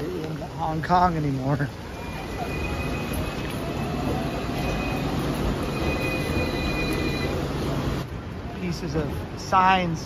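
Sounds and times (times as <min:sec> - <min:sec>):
rail vehicle rumbling: 0:00.0 - 0:10.0
wheels squealing: 0:01.7 - 0:08.0.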